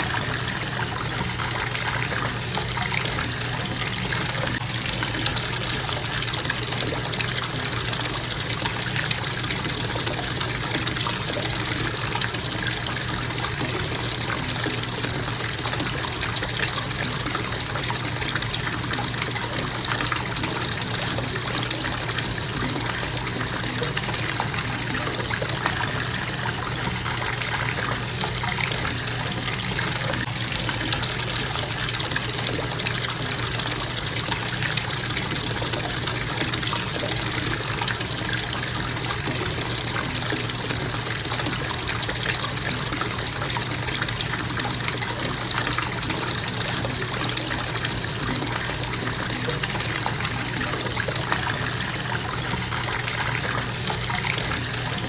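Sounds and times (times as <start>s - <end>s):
faucet water pouring into tub: 0.0s - 55.0s.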